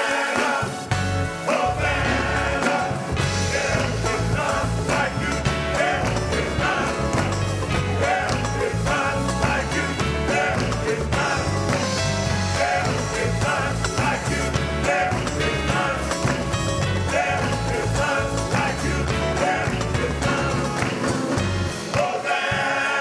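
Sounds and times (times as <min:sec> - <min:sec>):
band playing upbeat gospel music: 0:00.0 - 0:23.0
bass line: 0:00.9 - 0:21.8.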